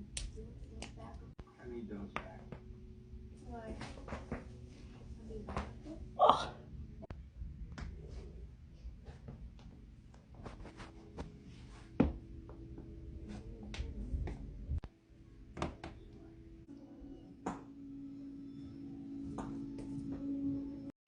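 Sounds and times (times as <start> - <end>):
steady low tone: 11.0 - 20.9.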